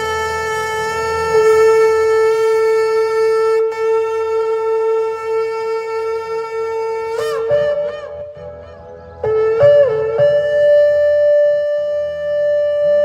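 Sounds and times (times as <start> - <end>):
ram's horn long held note: 0.0 - 10.3.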